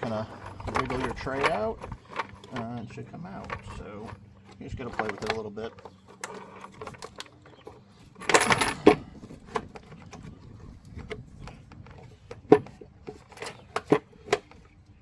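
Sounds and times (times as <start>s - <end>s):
sharp clicks and knocks: 0.0s - 9.0s
rattling and clinking: 0.0s - 9.6s.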